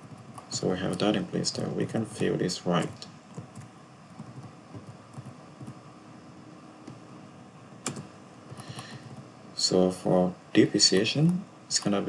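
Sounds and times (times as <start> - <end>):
computer keyboard taps: 3.4 - 5.8, 7.8 - 8.1.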